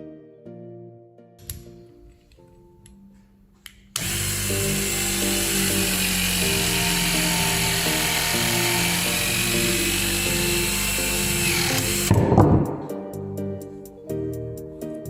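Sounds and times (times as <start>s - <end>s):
background music: 0.0s - 15.0s
electric pump motor running: 4.0s - 12.2s.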